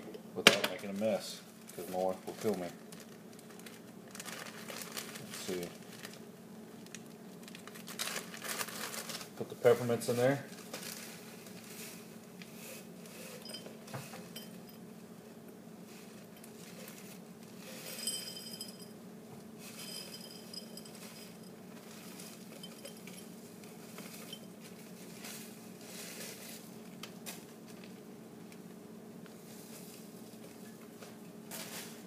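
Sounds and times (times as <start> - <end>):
candy pieces clinking in a jar: 17.8 - 18.9, 19.6 - 21.6, 22.4 - 23.3.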